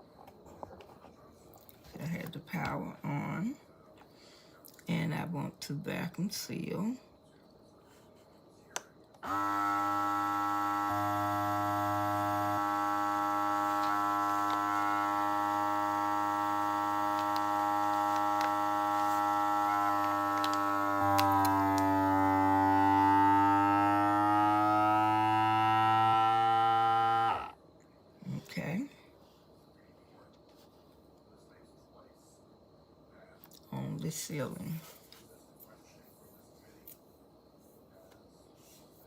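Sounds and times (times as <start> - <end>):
vacuum sealer pump whine: 9.2 - 27.6.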